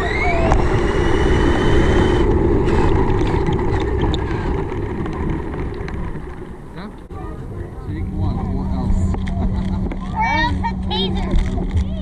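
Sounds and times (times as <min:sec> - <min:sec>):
electric motor whining: 0:00.0 - 0:07.0
toy car rumbling on ground: 0:00.0 - 0:12.0.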